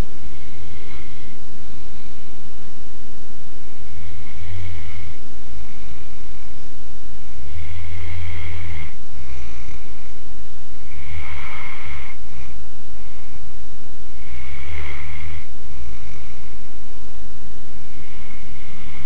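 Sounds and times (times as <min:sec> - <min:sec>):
dog snoring: 0:00.0 - 0:02.3, 0:03.6 - 0:06.5, 0:07.4 - 0:10.2, 0:10.8 - 0:13.4, 0:14.1 - 0:16.6, 0:17.8 - 0:19.0.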